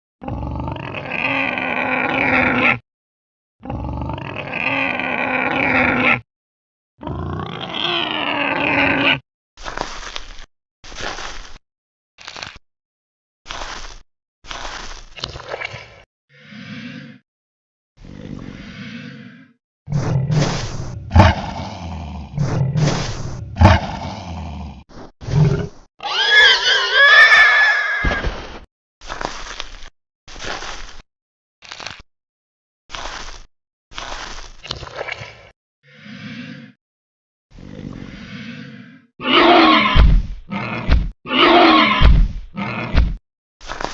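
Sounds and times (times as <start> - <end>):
cartoon dinosaur roar: 0.2 - 2.8, 3.6 - 6.2, 7.0 - 9.2, 16.3 - 17.2, 18.0 - 28.1, 35.8 - 36.8, 37.5 - 43.0.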